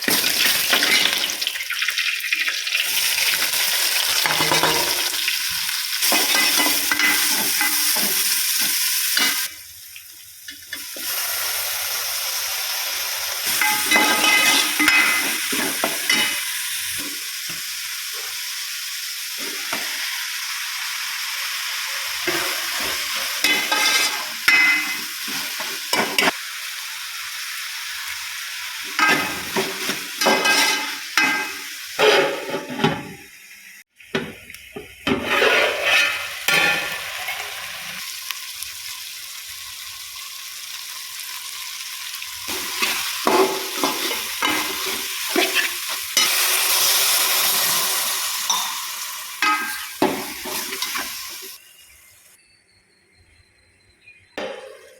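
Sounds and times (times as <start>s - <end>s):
food sizzling in a pan: 0.0s - 52.4s
spatula scraping a pan: 13.4s - 16.4s, 22.3s - 26.4s, 29.0s - 33.2s, 35.1s - 38.0s, 42.5s - 46.5s, 49.4s - 51.5s.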